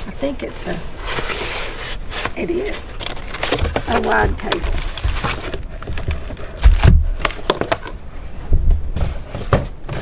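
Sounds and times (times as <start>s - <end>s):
cardboard packaging rustling: 0.1s - 10.0s
dull thumps: 3.5s - 7.8s.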